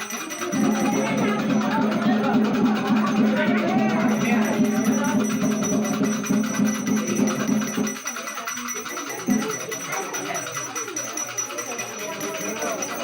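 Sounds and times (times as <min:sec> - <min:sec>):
drums beating: 0:00.1 - 0:13.0
voices chanting: 0:00.2 - 0:08.0.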